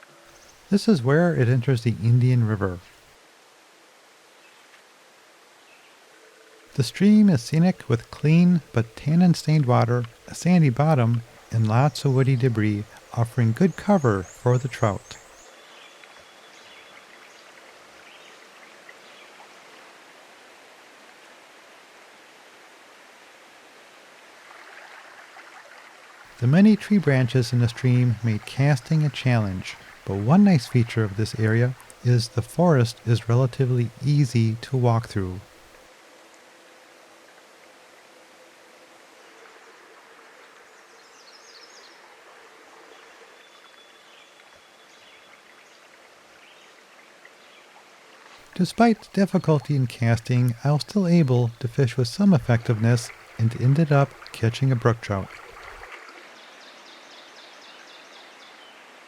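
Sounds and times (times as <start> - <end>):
stream flowing: 0.0 - 59.0
bird chirping: 6.8 - 17.4.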